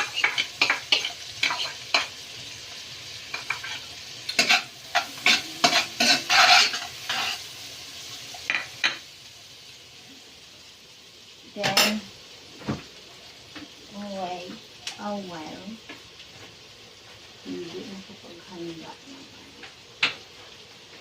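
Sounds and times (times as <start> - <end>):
spatula scraping a pan: 0.0 - 2.2, 3.2 - 7.5
food sizzling in a frying pan: 0.0 - 21.0.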